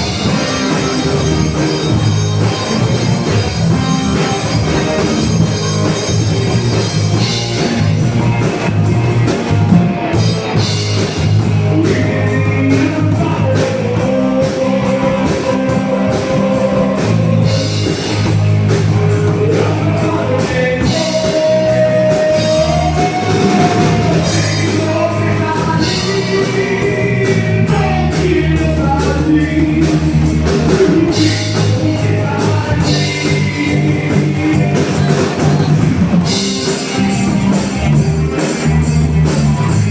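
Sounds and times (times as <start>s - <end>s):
bass guitar: 0.0s - 39.9s
drums: 0.0s - 39.9s
electric guitar: 0.0s - 39.9s
person singing: 11.4s - 37.6s.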